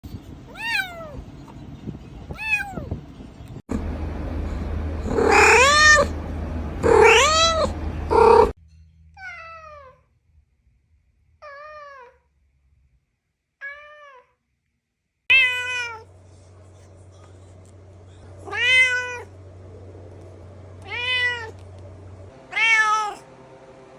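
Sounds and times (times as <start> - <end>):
cats meowing: 0.5 - 1.2, 2.3 - 2.9, 5.1 - 6.1, 6.8 - 8.6, 15.3 - 16.1, 18.4 - 19.3, 20.8 - 21.6, 22.5 - 23.2.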